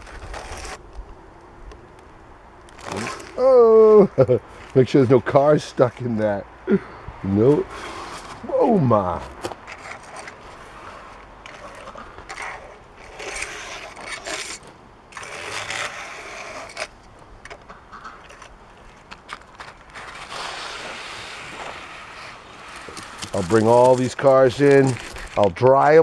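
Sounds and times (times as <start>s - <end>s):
snow scraped across a tabletop: 0.0s - 0.8s, 7.4s - 16.9s, 19.5s - 25.4s.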